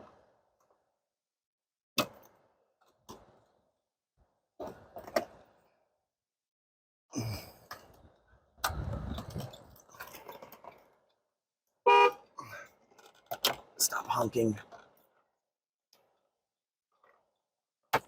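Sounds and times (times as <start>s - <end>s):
car horn blast: 11.9s - 12.2s.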